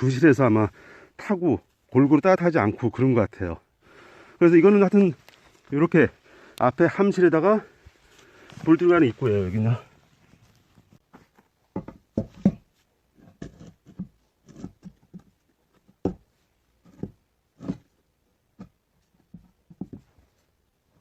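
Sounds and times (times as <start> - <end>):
short knocks and thumps: 11.1 - 17.9, 18.6 - 20.3.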